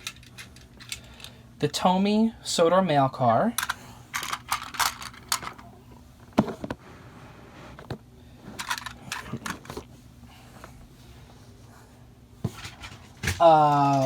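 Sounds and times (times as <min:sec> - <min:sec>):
plastic toy clicks and clatter: 0:03.6 - 0:05.6, 0:08.6 - 0:09.6.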